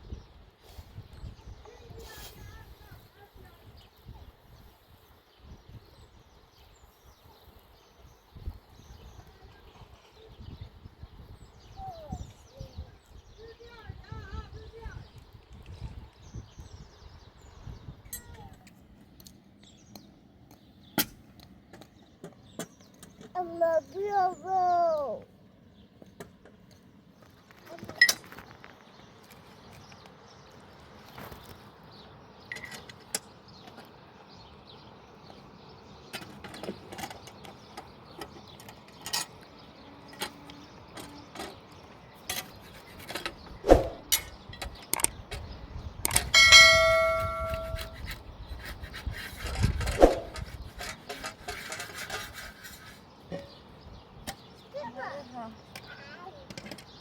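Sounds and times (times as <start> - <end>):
ringing metallic strike: 46.4 - 48.0.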